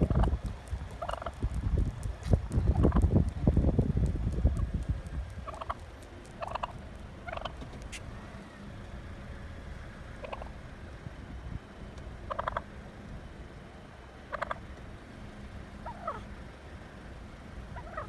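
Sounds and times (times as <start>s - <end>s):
low rumble: 0.0s - 8.0s
wild turkey calling: 1.0s - 1.4s, 5.4s - 8.1s, 10.2s - 10.6s, 12.2s - 12.8s, 14.3s - 14.7s, 15.8s - 16.4s, 17.7s - 18.0s.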